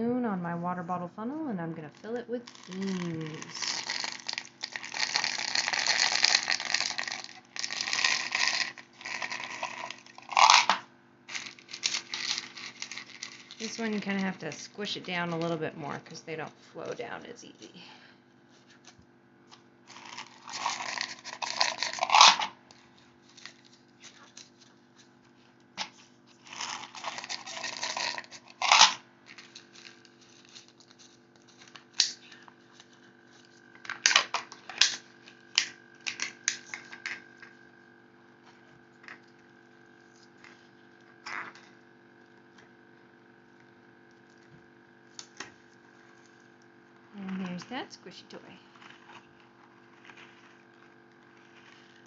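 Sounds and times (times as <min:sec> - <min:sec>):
beans clicking and rustling: 0:01.9 - 0:15.6, 0:19.5 - 0:25.2, 0:25.8 - 0:37.6, 0:45.1 - 0:52.0
dry beans rattling through funnel: 0:01.9 - 0:16.9, 0:19.9 - 0:24.5, 0:26.4 - 0:37.5.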